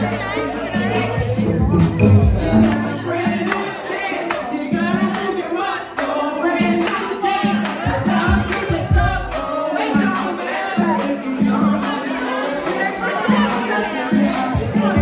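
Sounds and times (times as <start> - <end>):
group of voices singing: 0.0 - 15.0
music: 0.0 - 15.0.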